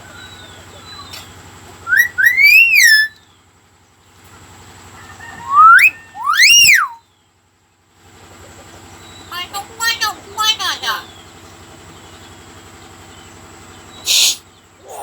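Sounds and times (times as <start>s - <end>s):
mimic bird whistling: 0.0s - 3.3s, 5.2s - 7.1s, 14.0s - 15.0s.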